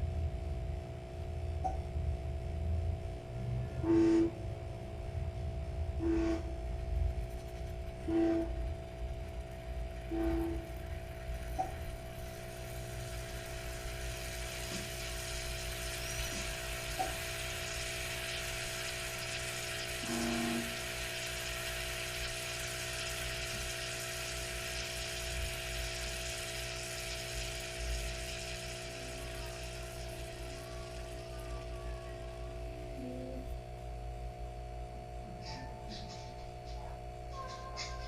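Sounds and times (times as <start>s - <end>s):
espresso machine pump humming: 0.0s - 38.0s
liquid hissing: 6.0s - 33.0s.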